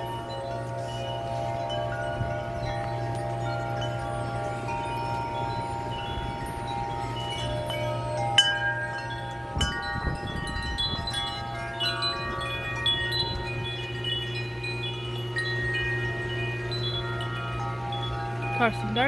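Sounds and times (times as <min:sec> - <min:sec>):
metal tube wind chimes ringing: 0:00.0 - 0:19.0
strong gusty wind: 0:09.4 - 0:13.8.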